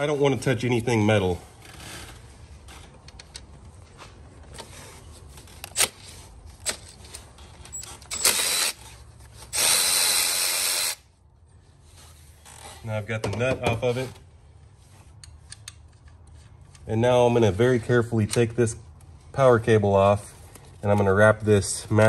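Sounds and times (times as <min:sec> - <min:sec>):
electric ratchet spinning: 0:08.1 - 0:08.8, 0:09.5 - 0:11.0.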